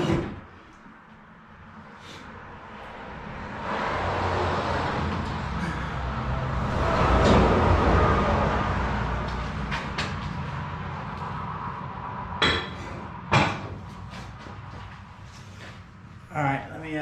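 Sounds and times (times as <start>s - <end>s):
sharp metallic clanks: 12.4s - 13.8s.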